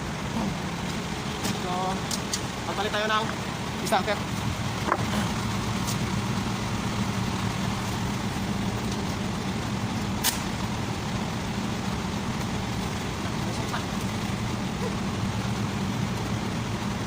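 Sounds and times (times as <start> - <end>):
engine humming: 0.0 - 17.0
sharp click: 10.2 - 10.5.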